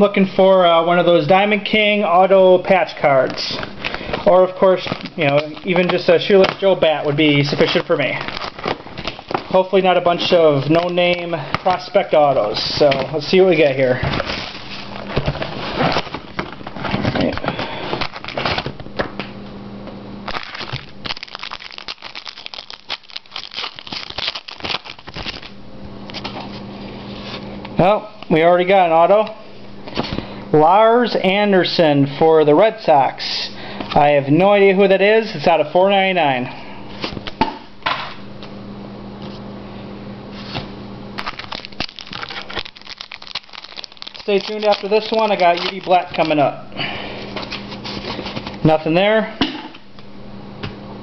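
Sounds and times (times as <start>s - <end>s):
cards rustling: 3.0s - 18.7s, 20.3s - 26.3s, 41.2s - 46.6s
foil wrappers crinkling and tearing: 3.0s - 18.8s, 20.2s - 26.3s, 41.2s - 46.5s
cards being riffled: 20.3s - 25.6s, 41.2s - 46.4s.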